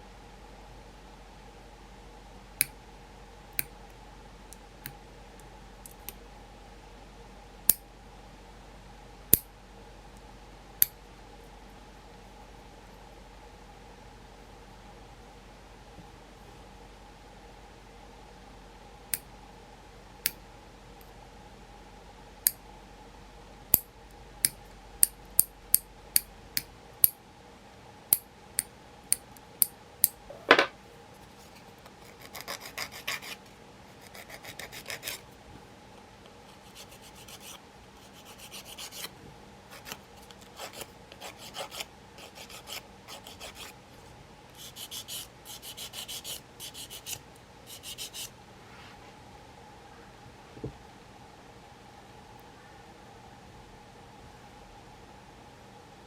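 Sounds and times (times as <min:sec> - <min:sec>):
nail file rasping: 0:34.0 - 0:35.2, 0:36.6 - 0:39.1, 0:40.6 - 0:43.7, 0:44.6 - 0:48.3.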